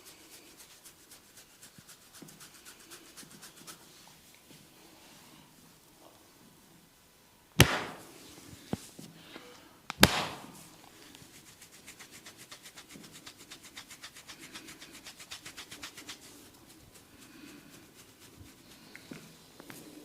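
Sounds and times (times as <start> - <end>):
soft rubbing: 0.0 - 5.6, 10.4 - 20.0
hand slap: 7.6 - 8.1, 9.9 - 10.6.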